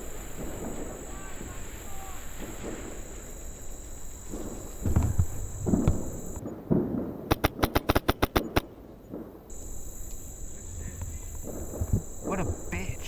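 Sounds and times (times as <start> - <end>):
dull thumps: 0.0 - 6.4, 9.5 - 13.0
airsoft rifle rapid shots: 7.3 - 8.8.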